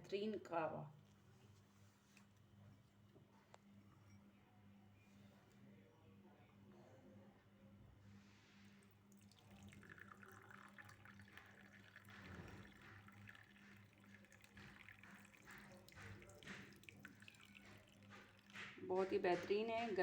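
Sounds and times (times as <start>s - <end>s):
water washing and dripping: 9.2s - 19.1s.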